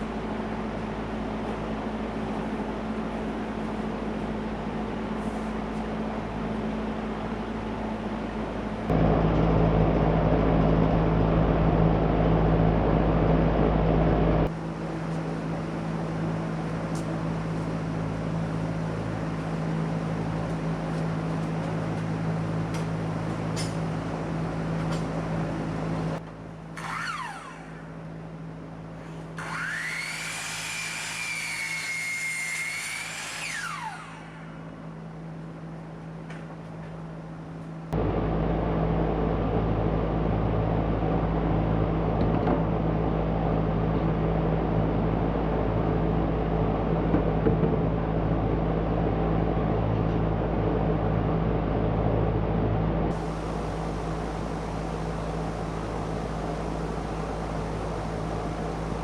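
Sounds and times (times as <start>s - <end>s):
low machine hum: 0.0s - 59.0s
motor whining up in pitch: 26.7s - 28.4s, 29.1s - 35.0s.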